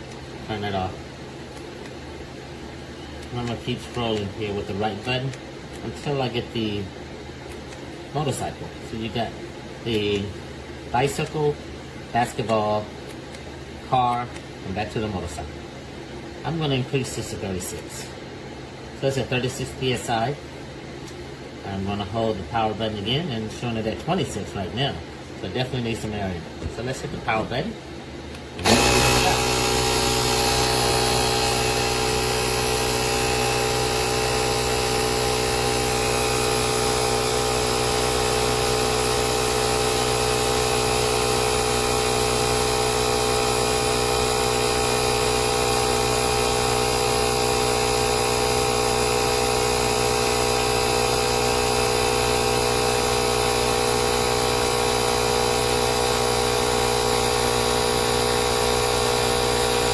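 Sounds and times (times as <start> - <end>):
tire inflator compressor running: 28.5 - 59.9.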